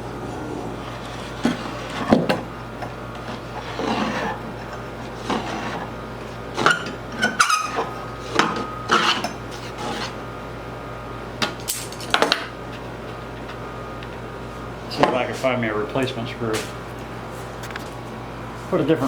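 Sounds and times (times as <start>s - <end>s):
steady low electrical hum: 0.0s - 19.0s
metal parts and tools clinking: 11.6s - 12.4s.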